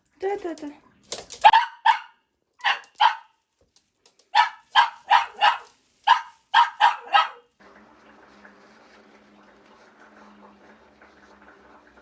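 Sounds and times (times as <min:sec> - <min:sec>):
dog barking: 0:01.4 - 0:03.4, 0:04.3 - 0:07.5.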